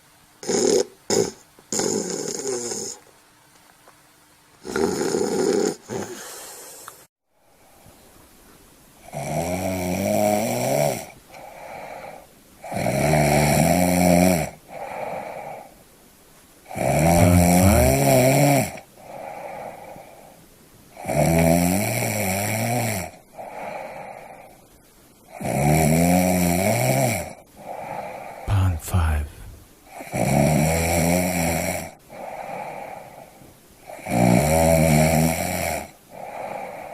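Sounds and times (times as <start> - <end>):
person snoring: 16.8 - 19.6, 27.7 - 29.6.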